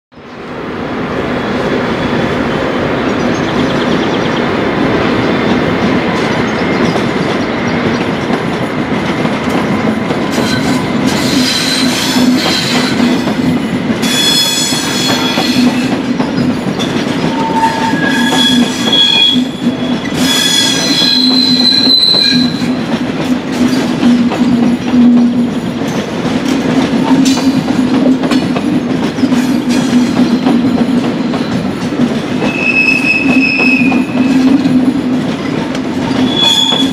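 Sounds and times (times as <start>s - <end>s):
train rumbling over points: 0.2s - 36.9s
wheel flanges squealing: 14.0s - 22.8s, 32.4s - 34.7s, 35.4s - 36.9s.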